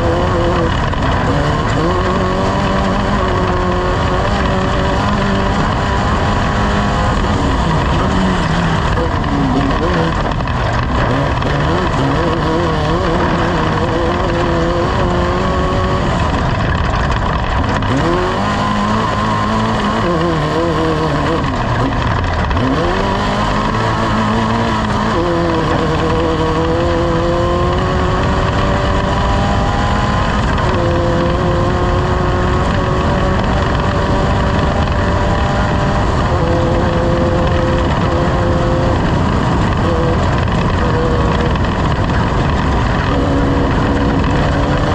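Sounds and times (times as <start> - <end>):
race engine revving hard: 0.0 - 44.9.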